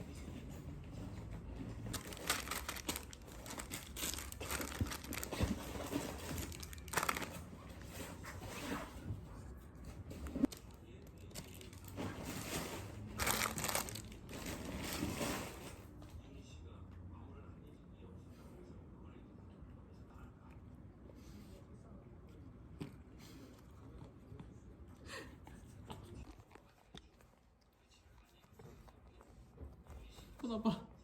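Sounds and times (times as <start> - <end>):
packaging tearing: 1.9 - 7.4, 13.2 - 14.7
packaging crinkling: 1.9 - 7.5, 10.5 - 12.5, 13.1 - 15.1.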